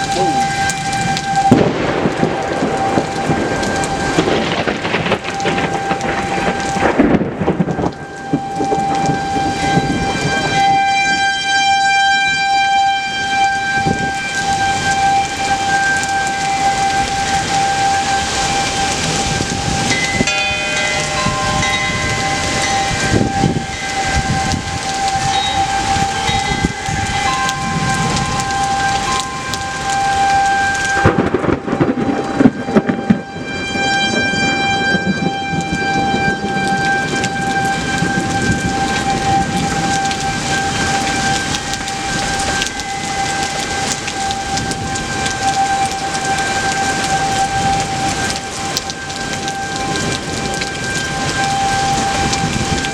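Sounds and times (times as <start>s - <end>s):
steady rain: 0.0s - 52.9s
rumbling thunder: 0.1s - 10.8s, 16.7s - 52.9s
loud thunder clap: 1.4s - 10.5s, 31.0s - 33.3s.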